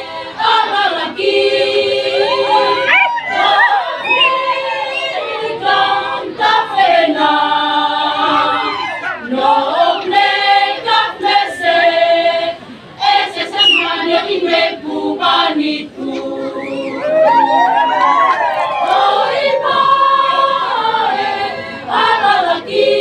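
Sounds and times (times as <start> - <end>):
women's choir singing: 0.0 - 23.0.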